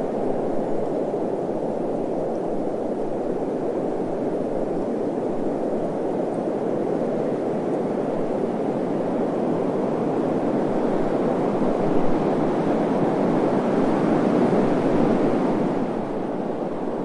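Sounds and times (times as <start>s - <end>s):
wind blowing steadily: 0.0s - 17.0s.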